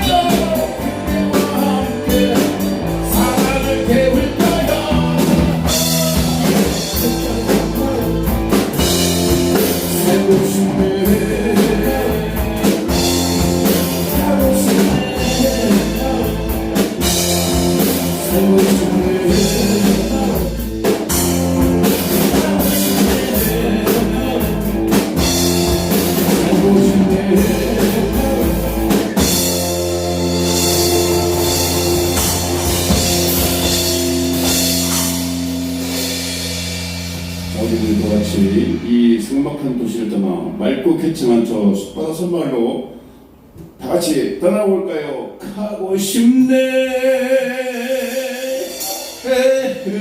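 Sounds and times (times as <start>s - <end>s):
electric guitar: 0.0s - 39.0s
drum kit steady beat: 0.0s - 39.8s, 47.9s - 50.0s.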